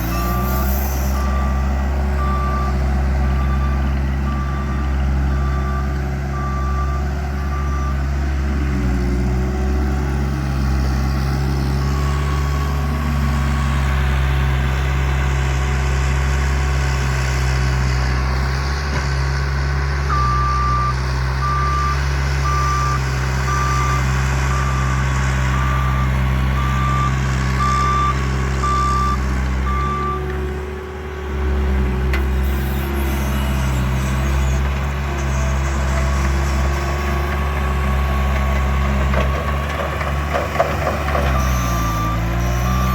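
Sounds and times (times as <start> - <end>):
reversing alarm beeping: 0.0 - 8.6, 20.1 - 30.3, 40.8 - 42.9
diesel engine running: 0.0 - 42.9.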